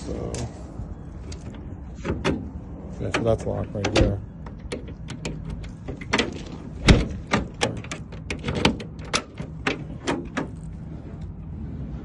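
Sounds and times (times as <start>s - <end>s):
lock and latch clicking: 3.1s - 10.5s.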